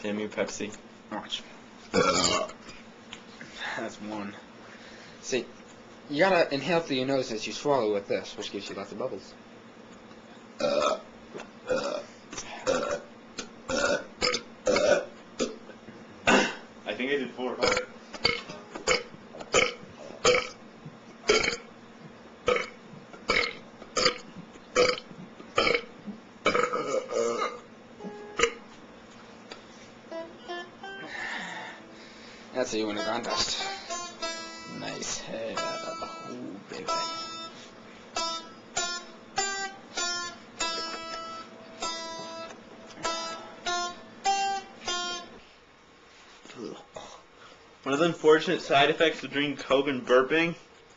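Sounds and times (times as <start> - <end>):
man burping: 1.9 - 2.6, 10.6 - 11.0, 11.7 - 12.0, 12.6 - 13.1, 13.7 - 15.6, 16.2 - 16.7, 17.6 - 20.6, 21.3 - 21.6, 22.5 - 27.6, 28.4 - 28.6
plucked guitar chords: 26.5 - 28.7, 30.1 - 31.2, 32.7 - 45.3.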